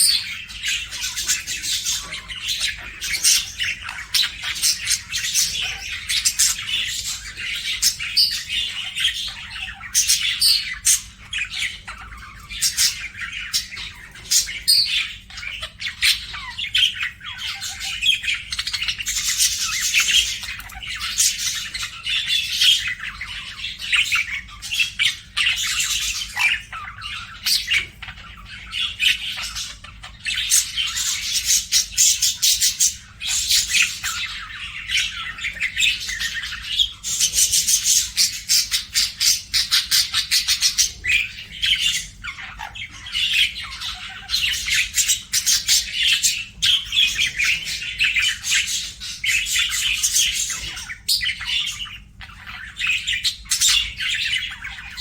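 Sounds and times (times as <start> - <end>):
budgerigar chirping and chattering: 0.0 - 55.0.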